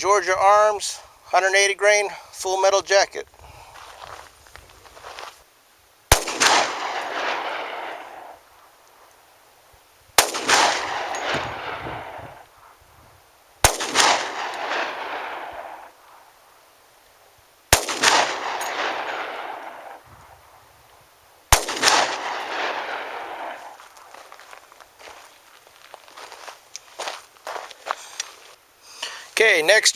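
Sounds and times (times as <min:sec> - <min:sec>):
gunshot echo: 0:06.1 - 0:08.4, 0:10.2 - 0:12.5, 0:13.6 - 0:16.0, 0:17.7 - 0:20.0, 0:21.5 - 0:23.8
pistol shots: 0:06.1 - 0:08.5, 0:10.2 - 0:12.5, 0:13.6 - 0:16.0, 0:17.7 - 0:20.1, 0:21.5 - 0:23.8.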